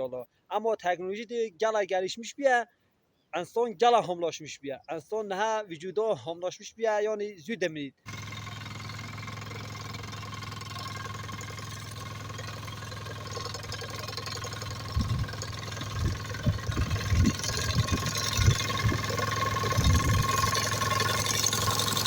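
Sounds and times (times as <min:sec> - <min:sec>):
hay mowing machine engine running: 0:08.1 - 0:22.0.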